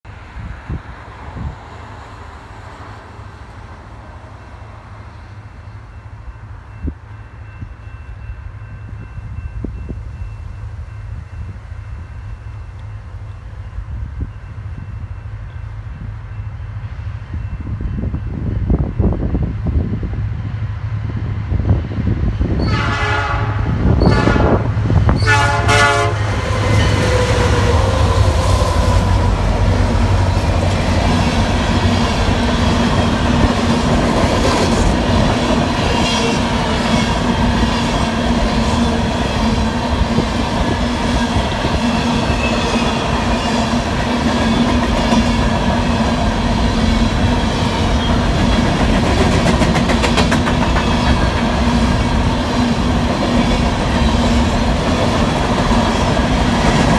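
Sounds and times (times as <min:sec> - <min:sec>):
train rumbling past: 0:00.1 - 0:56.9
train horn chord blasts: 0:22.6 - 0:29.2.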